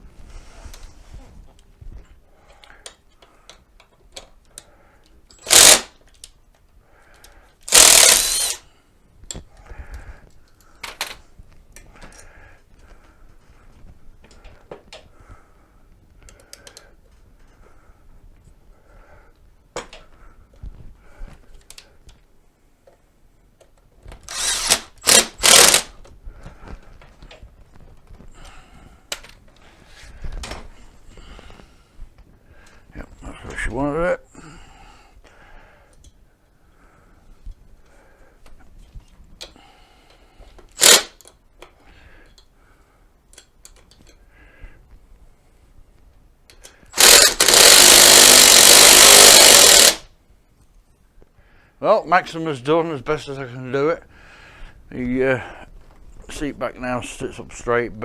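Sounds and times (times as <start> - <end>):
power tool running: 5.4 - 5.9, 7.7 - 8.6, 24.3 - 25.9, 40.8 - 41.1, 47.0 - 50.0
clicks and knocks of tools: 43.3 - 44.2, 46.5 - 47.8.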